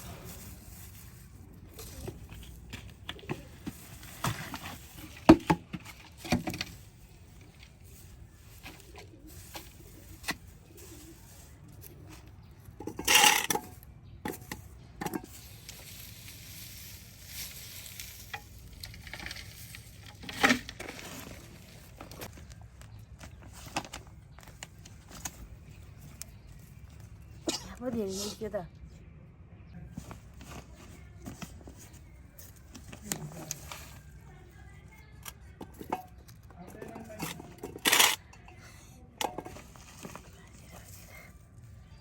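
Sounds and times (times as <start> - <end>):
scraping rustle: 0.0 - 13.8, 14.4 - 28.5
soil digging knocks and rustling: 0.0 - 28.1, 29.9 - 38.5, 39.2 - 42.0.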